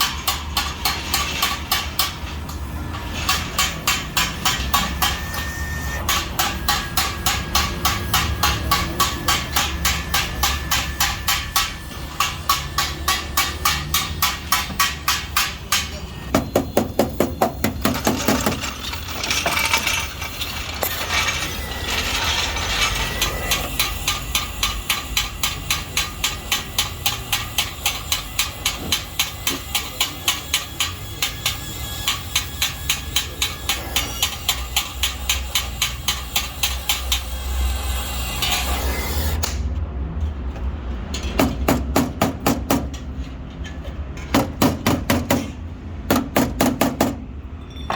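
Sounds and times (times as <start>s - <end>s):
rapid hammering: 41.4s - 43.0s, 44.3s - 47.2s.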